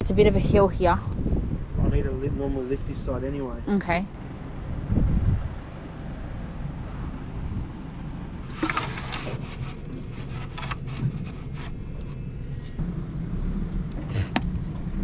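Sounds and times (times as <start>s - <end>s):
van engine running: 3.7s - 15.0s.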